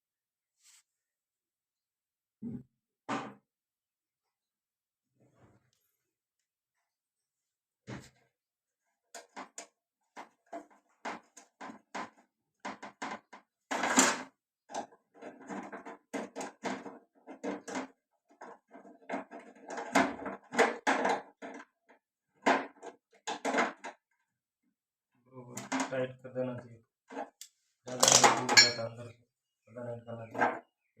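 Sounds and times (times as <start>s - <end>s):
tools working on metal parts: 27.3s - 28.9s.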